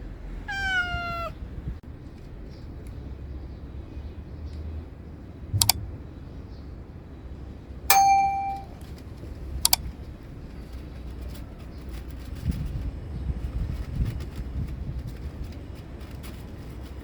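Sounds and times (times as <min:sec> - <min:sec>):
metal clinks: 0:07.9 - 0:08.8
ringing metal clang: 0:07.9 - 0:08.8.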